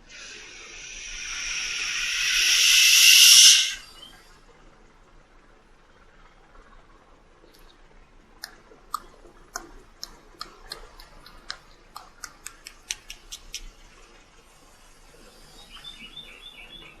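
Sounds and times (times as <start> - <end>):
short high chirps: 0.1 - 3.9
sharp irregular clicks: 8.4 - 13.7.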